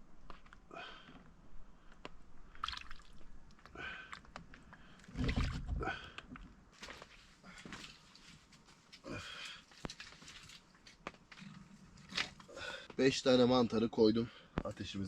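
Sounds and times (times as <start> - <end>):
small ticks and drips: 1.9 - 5.1
rustling handling noises: 6.7 - 12.5.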